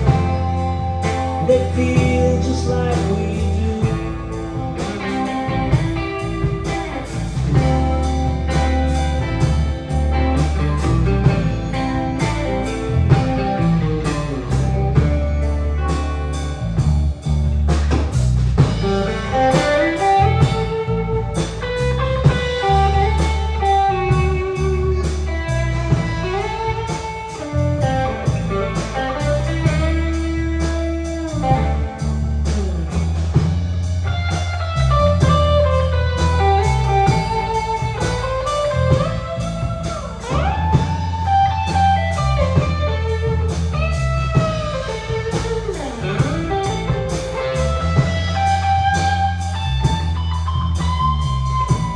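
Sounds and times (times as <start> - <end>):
bass: 0.0 - 51.9
drum kit beat: 0.0 - 51.9
electric guitar lead: 0.0 - 51.9.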